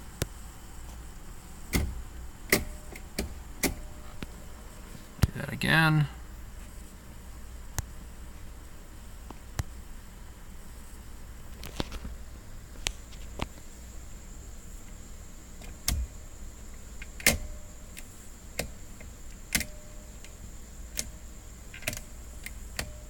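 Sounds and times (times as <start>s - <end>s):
steady low hum: 0.0s - 23.0s
steering wheel clicks and knocks: 1.7s - 4.0s.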